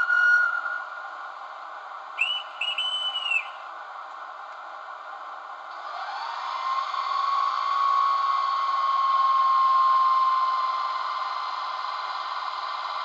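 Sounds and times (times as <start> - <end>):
whining electric motor sound: 5.7 - 13.0.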